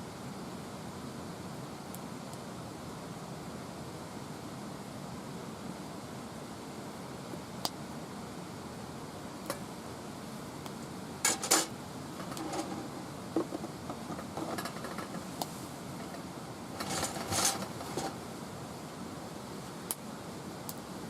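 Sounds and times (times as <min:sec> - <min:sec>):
steady low hiss: 0:00.0 - 0:21.0
cookware and utensils clinking: 0:11.3 - 0:12.8.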